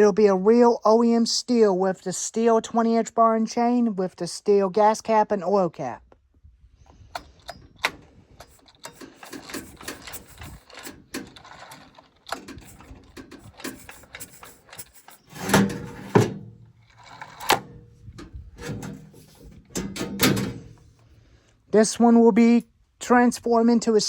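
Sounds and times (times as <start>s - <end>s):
objects being handled clicking: 7.2s - 15.4s.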